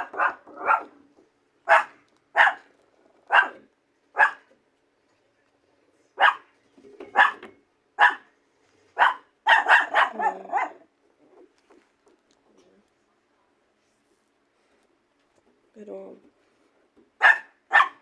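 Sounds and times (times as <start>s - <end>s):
dog barking: 0.0s - 0.9s, 1.7s - 2.7s, 3.3s - 4.5s, 6.2s - 6.5s, 7.1s - 8.3s, 9.0s - 10.8s, 17.2s - 18.0s.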